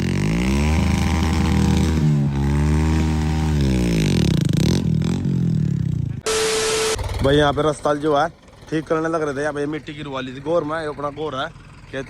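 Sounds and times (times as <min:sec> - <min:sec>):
heavy diesel engine running: 0:06.0 - 0:12.0.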